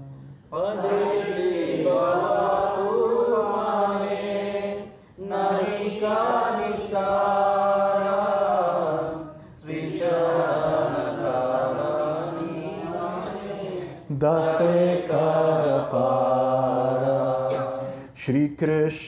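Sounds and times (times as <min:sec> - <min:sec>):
voices singing devotional song: 0:00.0 - 0:18.5.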